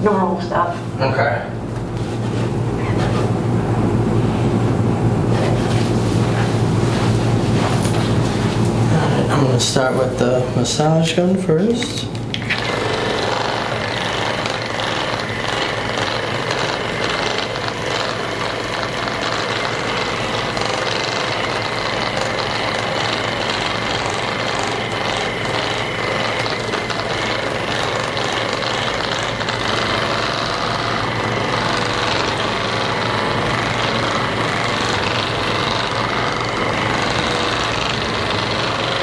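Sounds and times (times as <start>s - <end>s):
massage gun running: 11.8s - 39.0s.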